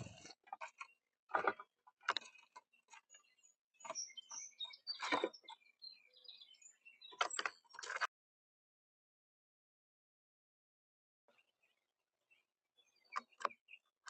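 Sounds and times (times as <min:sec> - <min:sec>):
birds tapping on feeder: 0:00.0 - 0:05.6, 0:13.0 - 0:13.8
faint high bird chirps: 0:00.0 - 0:08.1, 0:11.3 - 0:14.0.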